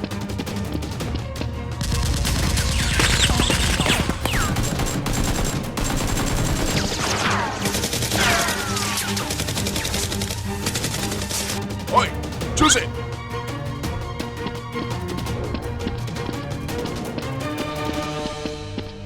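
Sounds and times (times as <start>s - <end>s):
automatic gunfire: 1.9s - 9.6s.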